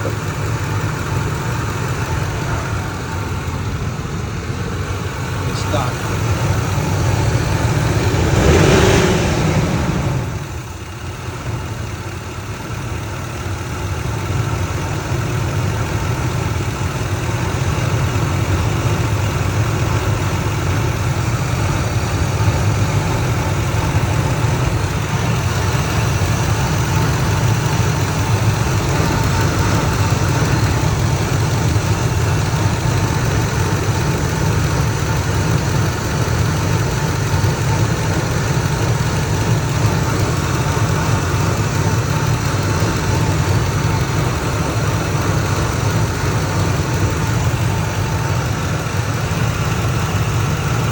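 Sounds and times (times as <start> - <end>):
car engine idling: 0.0 - 50.9.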